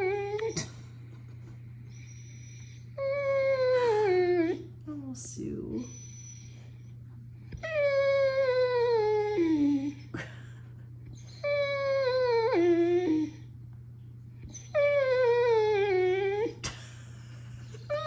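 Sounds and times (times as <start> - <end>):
dog whining: 0.0 - 1.0, 1.9 - 4.7, 5.8 - 10.2, 11.1 - 13.5, 14.4 - 16.8, 17.6 - 18.0.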